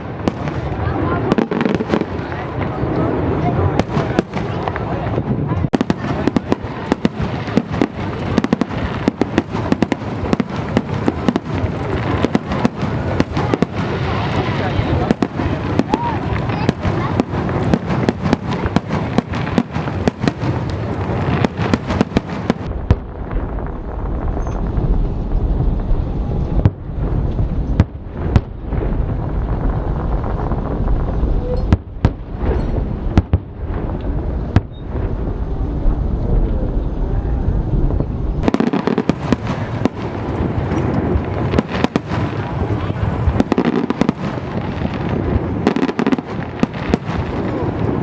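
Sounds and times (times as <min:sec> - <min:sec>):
fireworks sharp bangs: 0:00.0 - 0:37.0, 0:37.8 - 0:48.0
crackling and rumbling of shells: 0:37.8 - 0:48.0.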